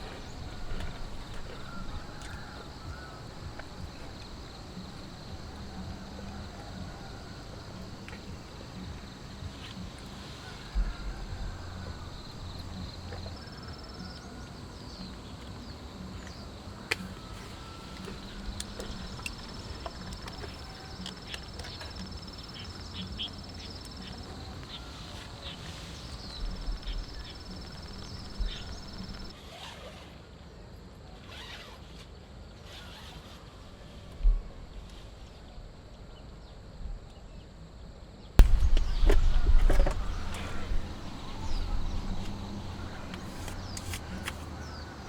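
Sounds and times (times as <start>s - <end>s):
steady background hiss: 0.0s - 45.0s
sharp thump: 38.4s - 40.9s.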